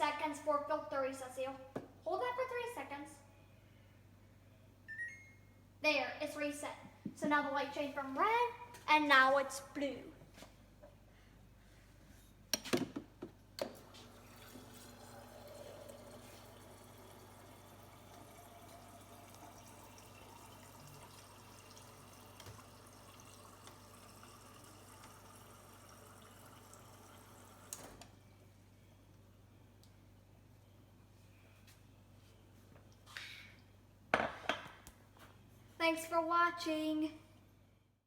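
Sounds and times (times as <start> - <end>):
water flowing into a pitcher: 13.8 - 28.0.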